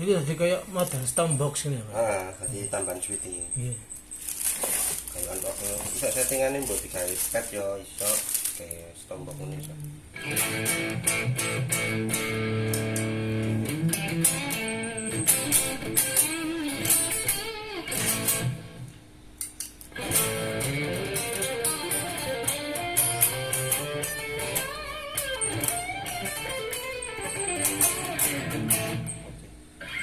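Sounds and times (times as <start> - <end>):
electric guitar melodic phrases: 10.2 - 18.9, 19.9 - 30.0.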